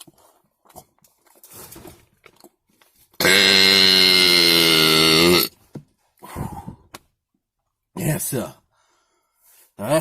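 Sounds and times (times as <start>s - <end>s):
man burping: 3.2s - 5.6s.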